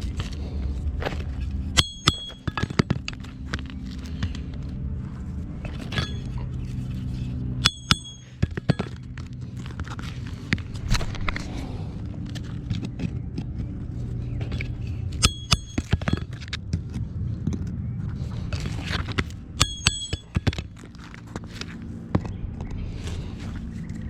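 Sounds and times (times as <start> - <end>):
steady low hum: 0.0 - 24.0
ringing metal clinks: 1.8 - 2.9, 5.9 - 6.4, 7.6 - 8.9, 15.2 - 15.9, 19.6 - 20.5.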